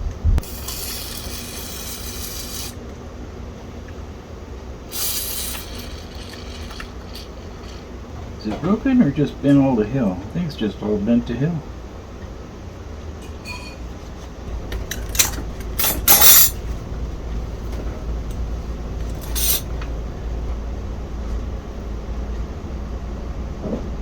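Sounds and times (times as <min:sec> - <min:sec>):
low steady hum: 0:00.0 - 0:24.0
tools clicking and scraping: 0:00.4 - 0:02.8, 0:04.9 - 0:07.9, 0:14.7 - 0:16.6, 0:19.0 - 0:19.8.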